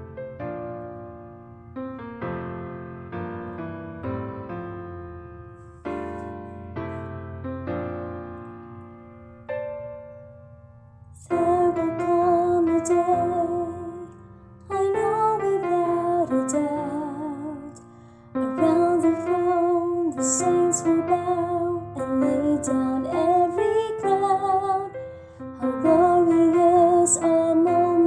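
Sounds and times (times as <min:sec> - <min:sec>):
piano accompaniment: 0:00.0 - 0:28.0
soprano woman singing: 0:11.2 - 0:28.0.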